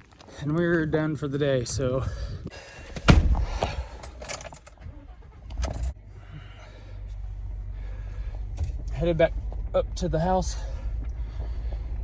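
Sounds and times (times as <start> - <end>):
vehicle door thumping shut: 2.9 - 3.8
keys rattling: 3.7 - 4.8, 5.5 - 6.0
vehicle engine running: 5.0 - 12.0.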